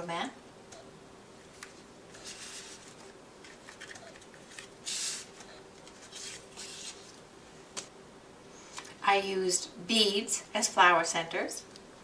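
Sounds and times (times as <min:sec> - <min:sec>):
paper rustling and sliding: 0:01.6 - 0:07.2.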